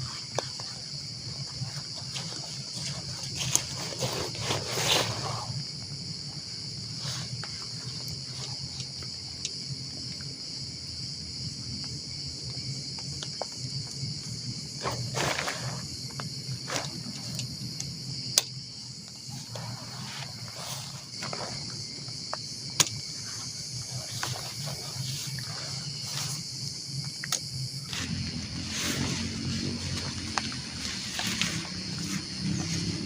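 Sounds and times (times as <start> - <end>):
rustles: 0.0 - 5.7, 6.3 - 9.2, 14.2 - 17.9, 19.0 - 27.2, 27.8 - 33.0
insects chorus: 0.0 - 33.0.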